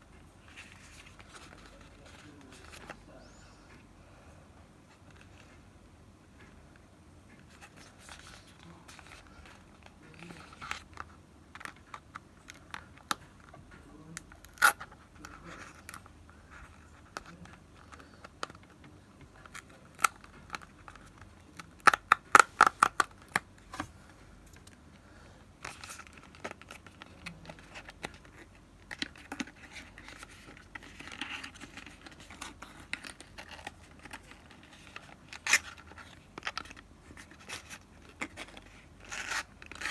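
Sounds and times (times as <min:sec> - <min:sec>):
packaging scratching and rustling: 0:00.4 - 0:03.0, 0:07.4 - 0:13.6, 0:14.2 - 0:18.8, 0:25.6 - 0:39.9.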